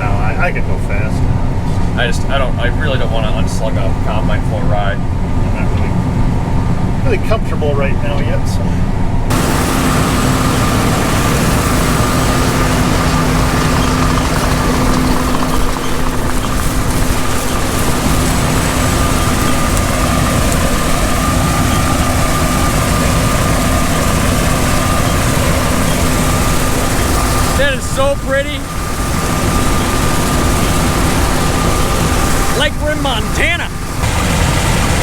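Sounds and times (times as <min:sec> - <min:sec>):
combine harvester running: 0:07.8 - 0:35.0.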